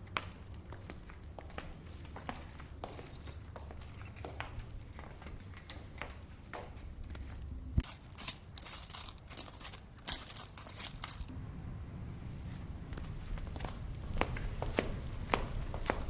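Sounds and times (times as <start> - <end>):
small metal objects jingling: 1.8 - 11.3.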